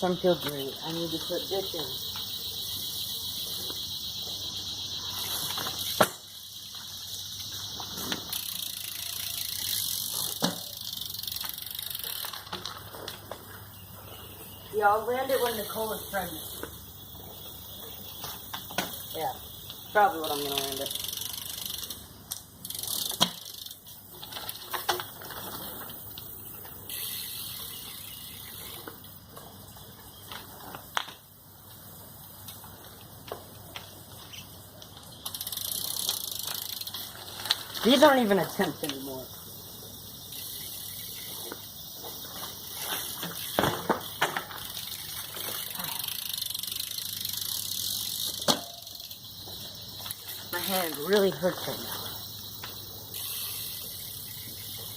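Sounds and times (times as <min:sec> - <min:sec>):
bike hub ratcheting: 0:00.0 - 0:13.3, 0:15.1 - 0:54.9
bike knocking on ground: 0:05.2 - 0:09.5, 0:10.1 - 0:13.7, 0:17.4 - 0:19.1, 0:23.0 - 0:26.8, 0:41.2 - 0:46.4, 0:48.2 - 0:50.3.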